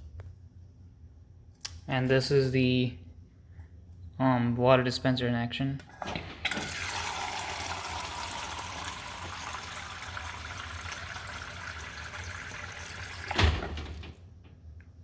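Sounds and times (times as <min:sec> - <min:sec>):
water pouring into container: 0:06.5 - 0:13.8.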